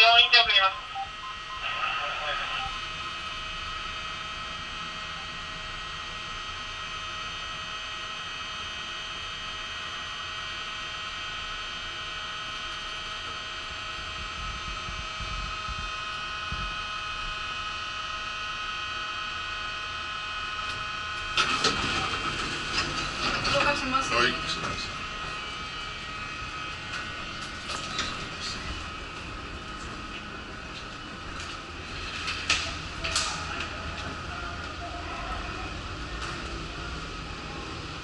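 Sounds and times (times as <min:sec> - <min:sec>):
high whining tones: 0:00.0 - 0:04.3
machinery drone: 0:00.0 - 0:38.0.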